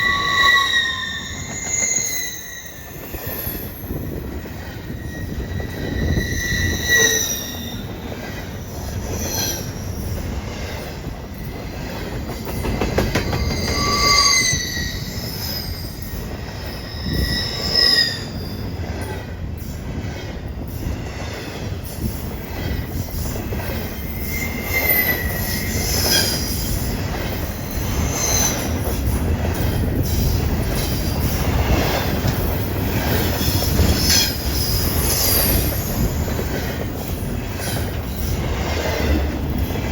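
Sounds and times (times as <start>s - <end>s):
high wheel squeals: 0.0s - 8.0s, 13.1s - 18.6s, 23.9s - 26.8s
train wheels rumbling on rail: 0.0s - 39.9s.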